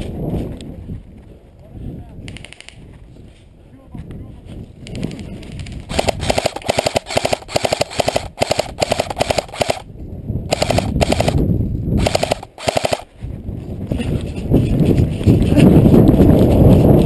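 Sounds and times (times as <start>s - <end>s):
airsoft gun firing bursts: 5.9s - 9.9s, 10.5s - 11.4s, 12.0s - 13.1s.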